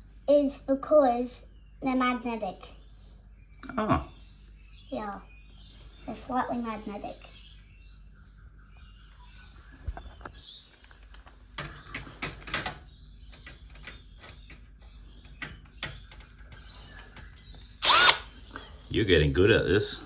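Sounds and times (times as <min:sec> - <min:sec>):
screws and screwdriver clicking: 0:15.3 - 0:18.3.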